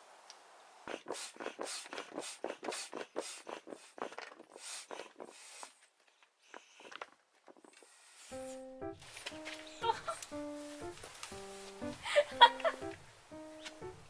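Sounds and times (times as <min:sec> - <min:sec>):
music: 0:08.3 - 0:14.0.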